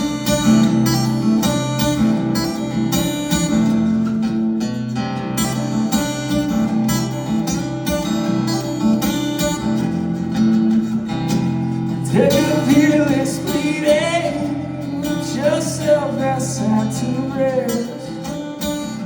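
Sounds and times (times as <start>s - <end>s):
acoustic guitar playing: 0.0s - 19.0s
person singing: 12.0s - 19.0s.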